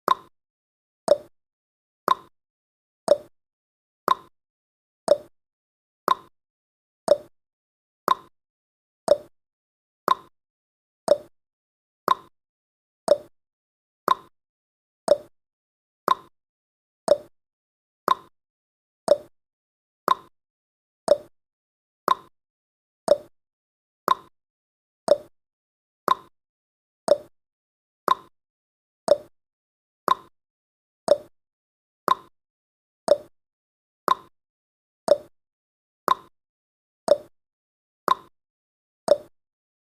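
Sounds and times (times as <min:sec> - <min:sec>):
timer ticking: 0:01.1 - 0:01.3, 0:02.1 - 0:02.3, 0:03.1 - 0:03.3, 0:04.1 - 0:04.3, 0:05.1 - 0:05.3, 0:07.1 - 0:07.3, 0:09.1 - 0:09.3, 0:11.1 - 0:11.3, 0:13.1 - 0:13.3, 0:15.1 - 0:15.3, 0:17.1 - 0:17.3, 0:19.1 - 0:19.3, 0:21.1 - 0:21.3, 0:23.1 - 0:23.3, 0:28.1 - 0:28.3, 0:29.1 - 0:29.3, 0:30.1 - 0:30.3, 0:31.1 - 0:31.3, 0:32.1 - 0:32.3, 0:34.1 - 0:34.3, 0:35.1 - 0:35.3, 0:36.1 - 0:36.3, 0:38.1 - 0:38.3, 0:39.1 - 0:39.3.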